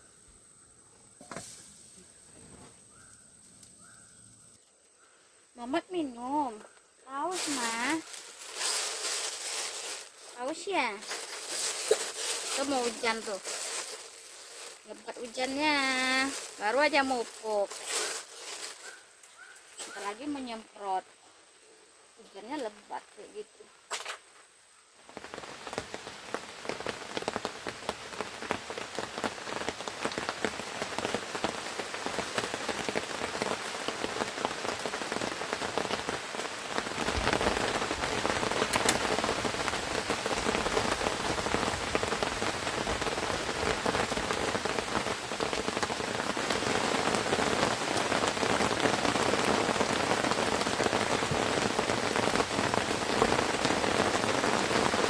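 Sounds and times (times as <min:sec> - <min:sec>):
heavy rain falling: 0:07.3 - 0:18.9, 0:25.0 - 0:55.0.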